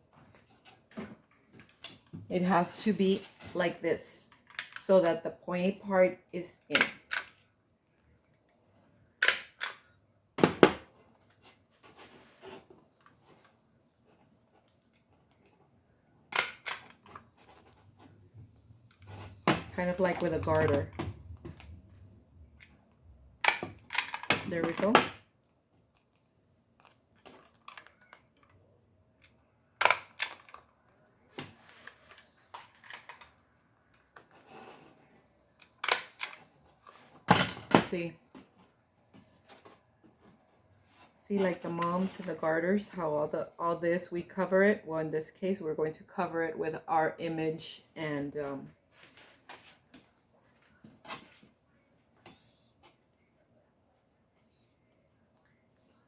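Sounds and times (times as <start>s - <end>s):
faint handling sounds: 10.9s - 44.0s, 48.1s - 56.0s.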